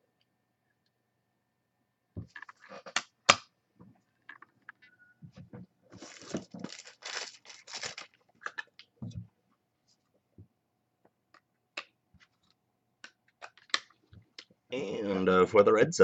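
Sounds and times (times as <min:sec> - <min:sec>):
foil wrapper tearing and crinkling: 0:06.0 - 0:08.3.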